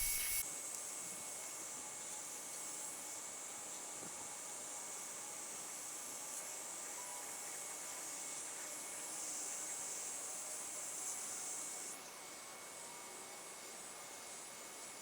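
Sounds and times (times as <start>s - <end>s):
heat gun blowing hiss: 0.0s - 0.4s.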